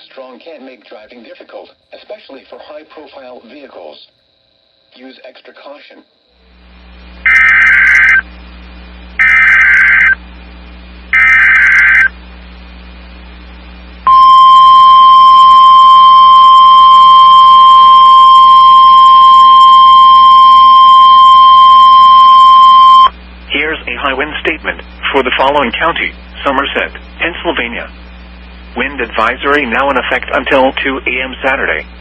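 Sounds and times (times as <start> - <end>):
faint low hum: 0.9 - 32.0
warbling digital data tones: 7.2 - 8.3, 9.2 - 10.2, 11.1 - 12.2, 14.1 - 23.2
steady single-pitch attention tone: 7.3 - 8.2, 9.2 - 10.2, 11.1 - 12.1, 14.0 - 23.1.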